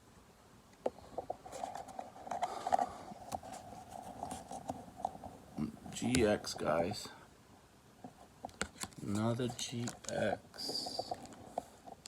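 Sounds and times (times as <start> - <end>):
trading cards clicking and scraping: 1.3 - 5.3, 8.1 - 12.0.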